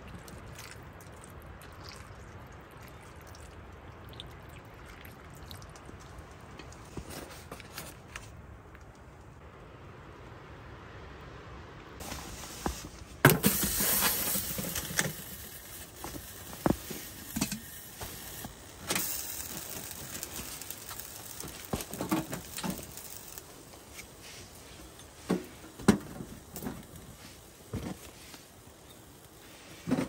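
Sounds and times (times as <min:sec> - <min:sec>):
rustling handling noise: 0:06.4 - 0:09.4, 0:12.0 - 0:30.0.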